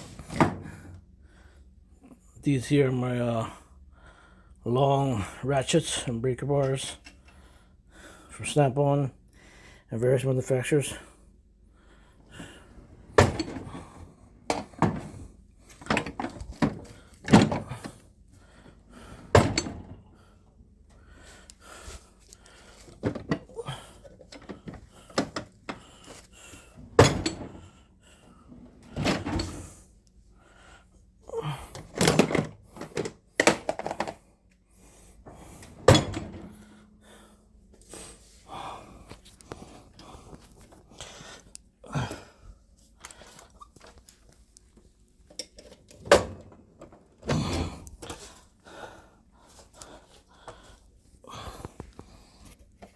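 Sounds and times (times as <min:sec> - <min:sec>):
tool chest drawers opening and shutting: 0:00.0 - 0:01.0, 0:12.3 - 0:18.1, 0:18.7 - 0:20.2, 0:22.7 - 0:27.8, 0:28.5 - 0:29.9, 0:31.4 - 0:34.3, 0:35.2 - 0:37.0, 0:45.2 - 0:48.5
tools clanking: 0:13.1 - 0:18.0, 0:19.2 - 0:20.0, 0:27.0 - 0:27.7.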